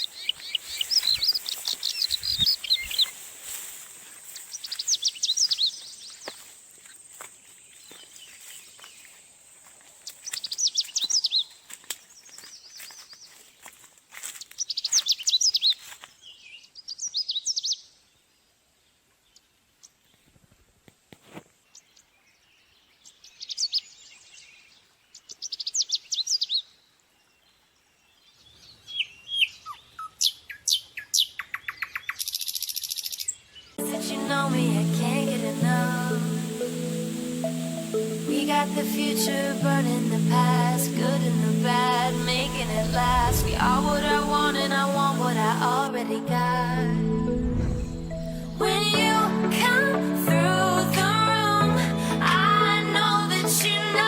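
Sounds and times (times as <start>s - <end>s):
birds chirping and trilling: 0.0s - 3.2s, 4.3s - 6.5s, 28.4s - 48.9s.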